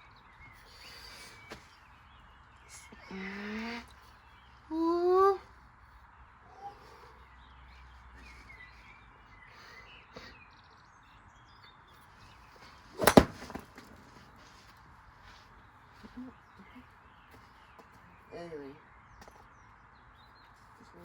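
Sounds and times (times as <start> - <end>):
faint birdsong: 0.0 - 21.0
loud sharp impact: 13.0 - 13.6.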